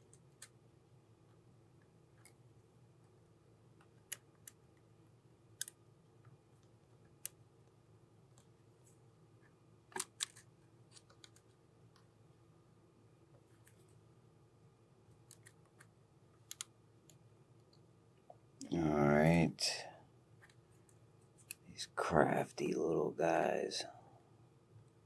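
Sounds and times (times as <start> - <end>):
faint low hum: 0.0 - 25.0.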